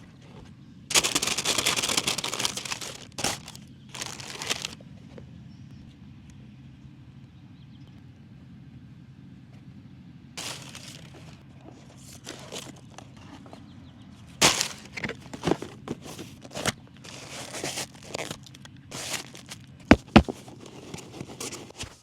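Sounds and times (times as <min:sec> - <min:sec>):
cardboard and paper rustling: 0:00.9 - 0:04.8, 0:10.4 - 0:13.6, 0:14.4 - 0:22.0.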